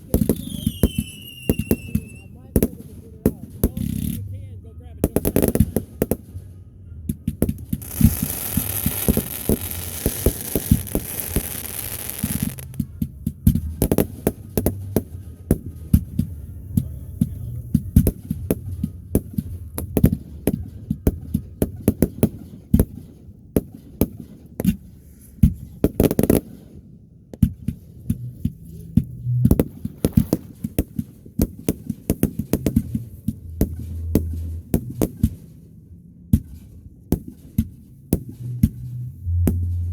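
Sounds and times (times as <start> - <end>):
firework shells booming: 7.2 - 16.3
fireworks crackling hiss: 7.7 - 12.8.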